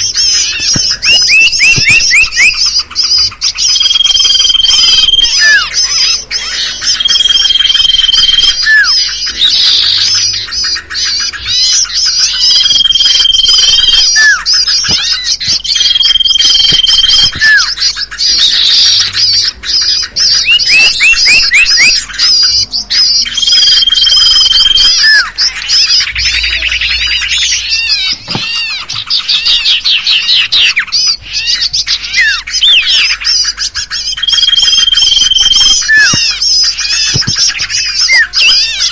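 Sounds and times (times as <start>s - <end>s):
small birds chattering and trilling: 0.0s - 38.9s
long steady whistle: 34.2s - 36.2s.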